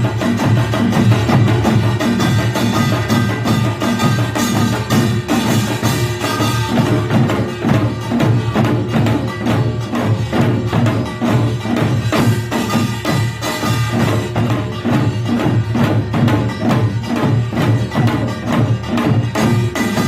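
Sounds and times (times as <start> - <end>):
drumbeats: 0.0 - 20.0.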